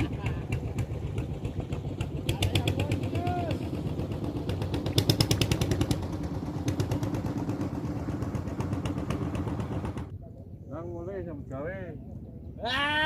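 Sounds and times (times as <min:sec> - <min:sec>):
small engine running: 0:00.0 - 0:10.1.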